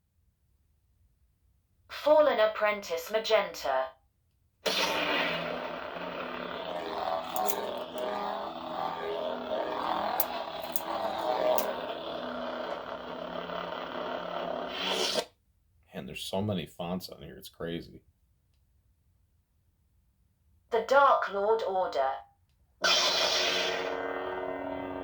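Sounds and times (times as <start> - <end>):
lightsaber crackles: 4.7 - 15.2
lightsaber igniting: 4.7 - 15.3, 22.8 - 24.3
lightsaber humming: 5.0 - 14.8.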